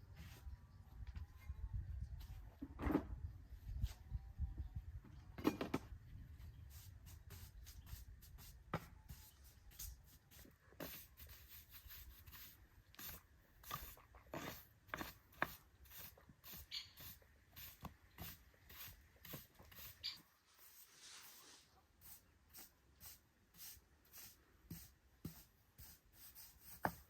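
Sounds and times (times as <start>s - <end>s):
hand tool scraping rough surface: 10.8s - 21.6s.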